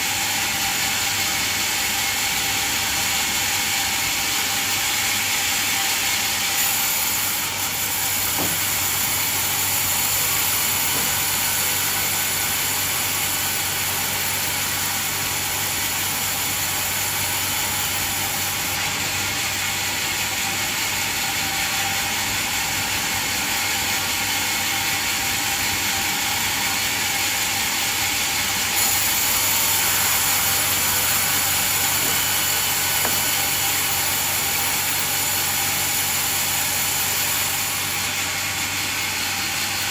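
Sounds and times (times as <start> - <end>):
band sawmill running: 0.0 - 39.9.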